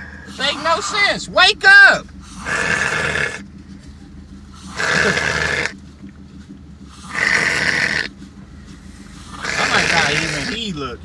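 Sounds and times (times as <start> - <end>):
man snoring heavily: 0.0 - 1.3, 2.2 - 3.4, 4.5 - 5.8, 6.9 - 8.1, 8.8 - 10.8.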